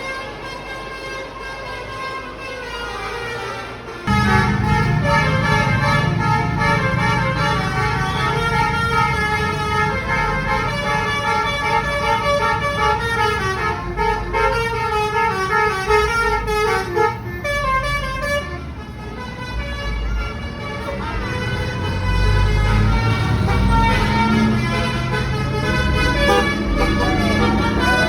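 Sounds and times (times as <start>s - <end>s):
bus engine rumble: 0.0s - 28.0s
musical bus horn: 0.0s - 28.0s.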